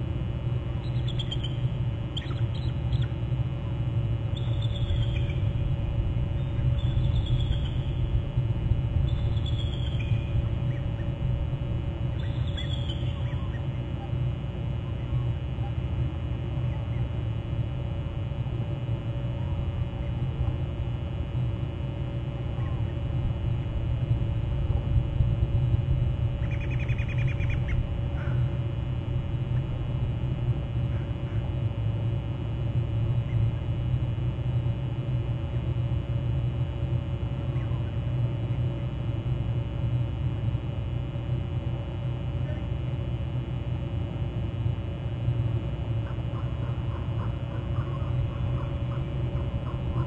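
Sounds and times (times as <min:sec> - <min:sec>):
faint hum: 0:00.0 - 0:50.0.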